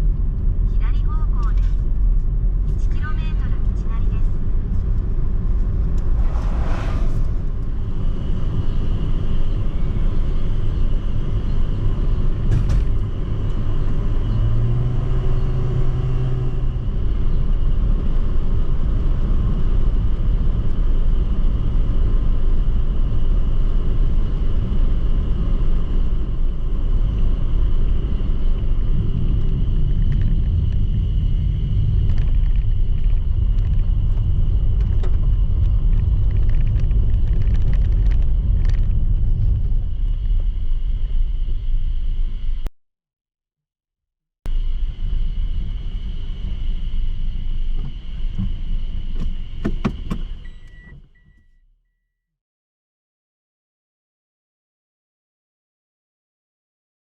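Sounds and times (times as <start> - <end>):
wind buffeting microphone: 4.4 - 41.4.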